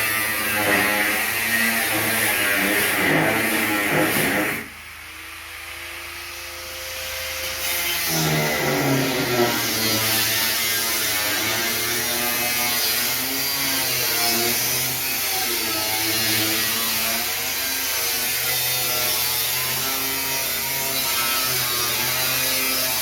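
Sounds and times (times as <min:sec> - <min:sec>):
power tool motor running: 0:00.0 - 0:04.7, 0:05.8 - 0:17.5.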